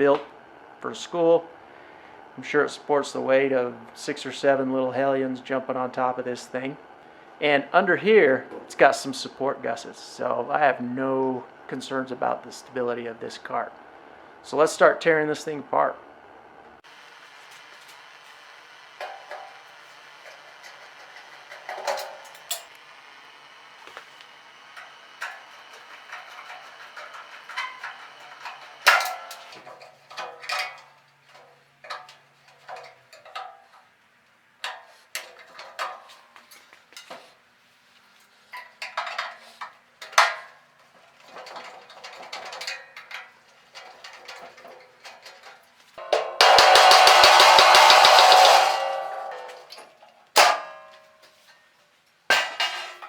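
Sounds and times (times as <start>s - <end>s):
power tool running: 16.9s - 29.6s, 46.0s - 49.8s
metallic clanks of sheet metal: 19.0s - 22.8s, 24.7s - 33.7s, 41.4s - 51.3s.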